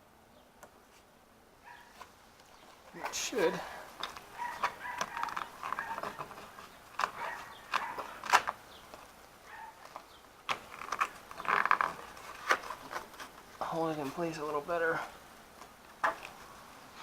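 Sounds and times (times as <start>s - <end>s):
hook-and-loop fabric rustling: 0.8s - 17.0s.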